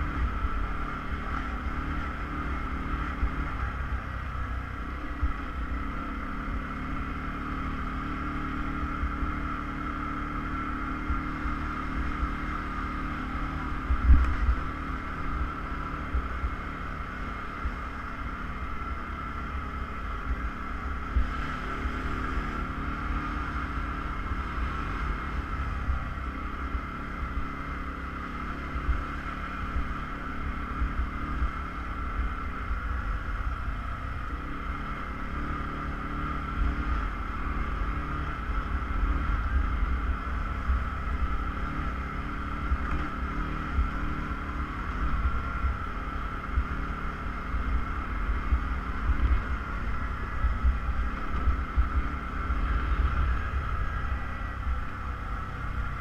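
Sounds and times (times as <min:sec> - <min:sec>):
off-road vehicle engine droning: 0:00.0 - 0:56.0.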